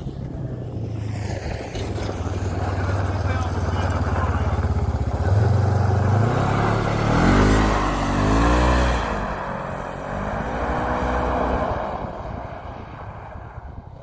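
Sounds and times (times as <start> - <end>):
vehicle engine revving hard: 2.5 - 12.4.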